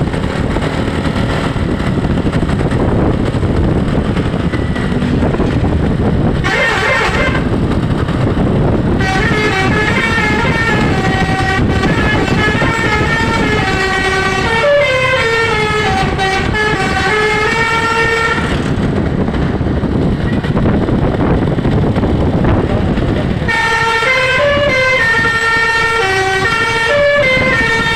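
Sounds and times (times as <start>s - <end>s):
low rumble: 0.0s - 27.9s
musical bus horn: 6.1s - 7.8s, 8.6s - 18.8s, 23.4s - 27.9s.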